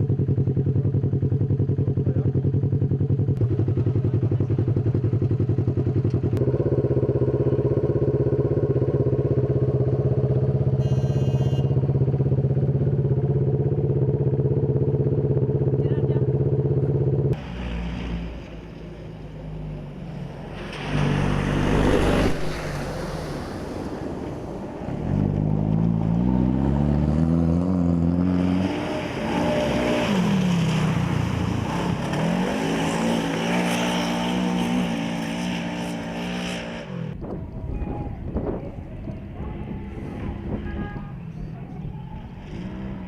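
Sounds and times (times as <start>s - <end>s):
rally car engine revving: 24.9s - 37.3s, 38.4s - 43.0s.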